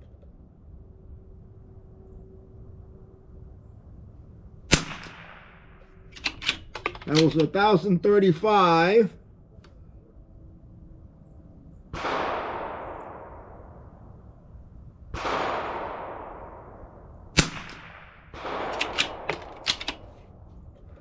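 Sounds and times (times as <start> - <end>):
rifle shots with echo: 4.7 - 7.8, 11.9 - 14.0, 15.1 - 20.2
rifle bolt clicking: 6.1 - 7.6, 17.4 - 17.9, 18.7 - 20.2.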